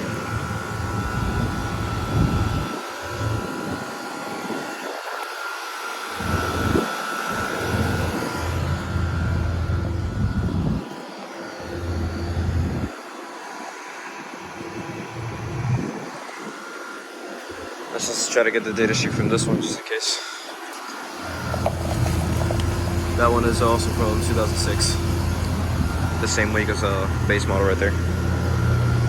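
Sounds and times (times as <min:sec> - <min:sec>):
low rumbles: 0:00.0 - 0:03.8, 0:06.2 - 0:11.0, 0:11.6 - 0:13.0, 0:21.2 - 0:29.0
air conditioner unit humming: 0:00.0 - 0:29.0.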